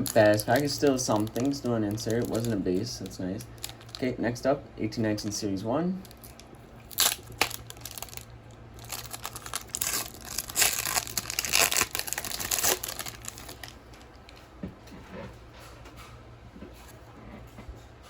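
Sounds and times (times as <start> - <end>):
card pack wrapper tearing and crinkling: 0.0 - 4.1, 6.0 - 14.0.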